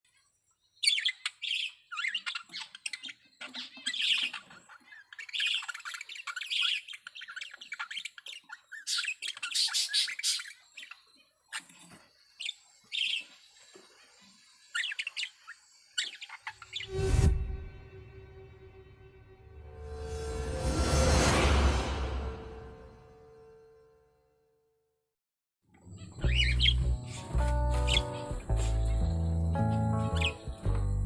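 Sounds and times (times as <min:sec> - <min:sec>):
budgerigars chattering and squawking: 0:00.8 - 0:13.4, 0:26.0 - 0:30.6.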